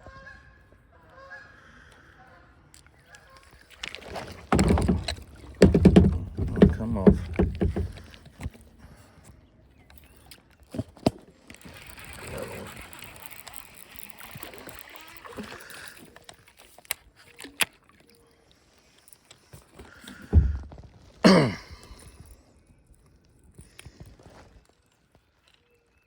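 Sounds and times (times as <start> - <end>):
water sloshing: 3.4 - 8.7
heavy thump: 4.5 - 8.0
knocks on kayak hull: 4.5 - 8.2.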